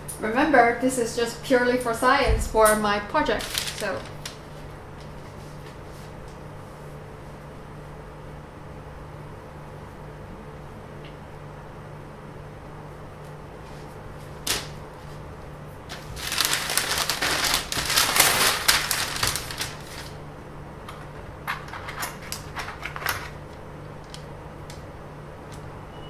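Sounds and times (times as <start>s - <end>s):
steady low hum: 0.0s - 26.0s
rustling and crinkling: 2.5s - 6.9s, 13.2s - 20.2s, 20.9s - 24.8s.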